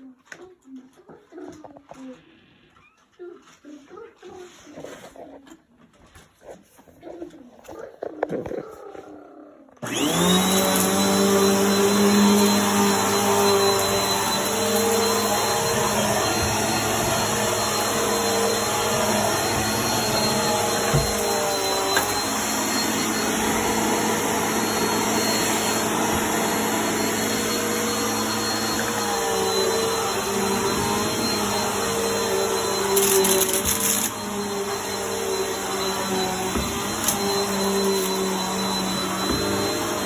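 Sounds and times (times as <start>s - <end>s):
vacuum cleaner running: 9.8s - 40.0s.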